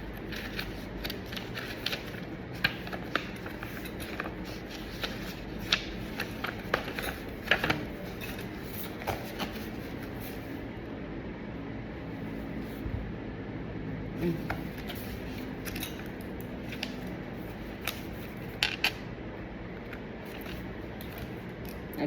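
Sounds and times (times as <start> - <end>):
paper rustling: 0.0 - 10.6, 14.3 - 18.6.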